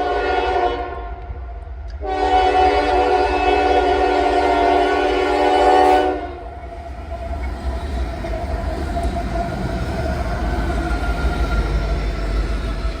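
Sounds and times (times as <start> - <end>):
locomotive air horn chord: 0.0 - 1.2, 2.0 - 6.4
train rumbling past: 0.0 - 13.0.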